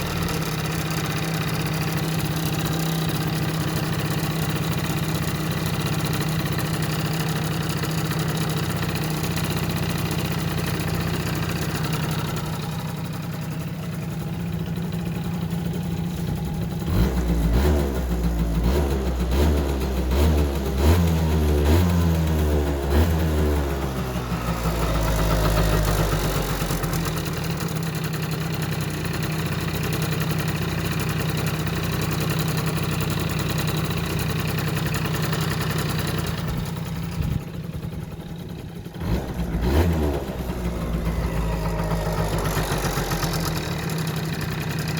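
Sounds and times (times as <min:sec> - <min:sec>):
scooter engine revving and idling: 0:00.0 - 0:44.9.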